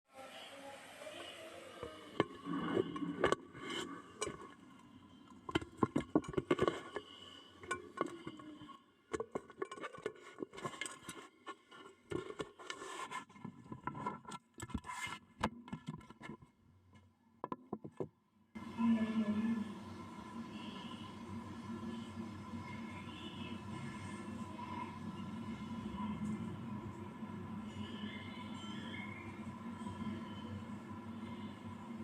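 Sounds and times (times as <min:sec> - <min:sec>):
clay toy pots clattering: 0:05.4 - 0:14.8.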